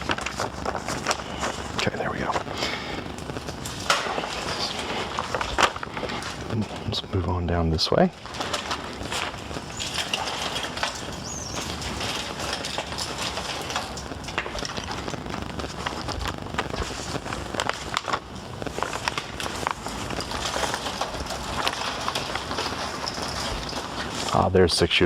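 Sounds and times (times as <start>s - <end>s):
shopping cart rattling: 3.6s - 25.0s.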